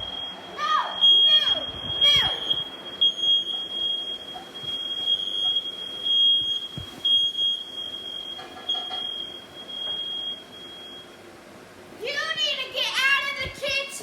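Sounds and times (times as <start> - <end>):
smoke alarm shrill tone: 0.0 - 11.2.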